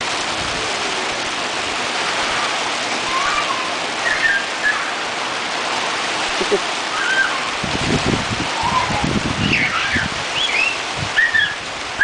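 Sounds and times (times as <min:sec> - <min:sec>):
rushing water: 0:00.0 - 0:12.0
children calling out: 0:02.0 - 0:05.3, 0:06.5 - 0:07.7, 0:08.4 - 0:10.2.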